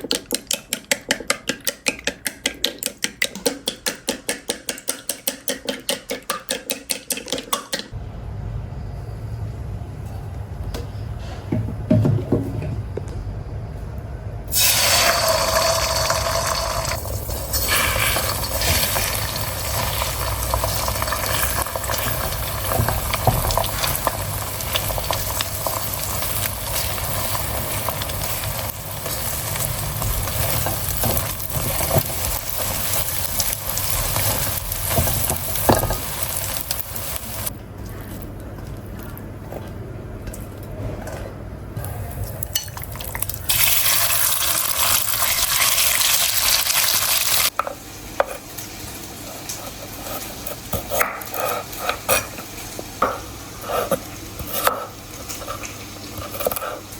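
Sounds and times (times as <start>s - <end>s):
rice sizzling in a pan: 14.5s - 37.5s, 43.0s - 56.9s.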